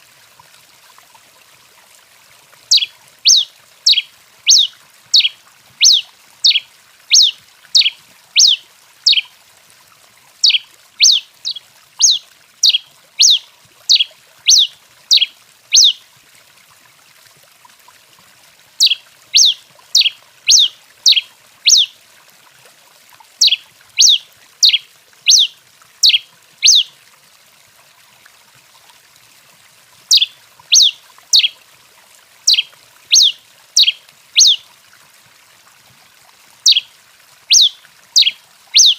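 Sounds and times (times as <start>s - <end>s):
faint steady hiss: 0.0s - 38.9s.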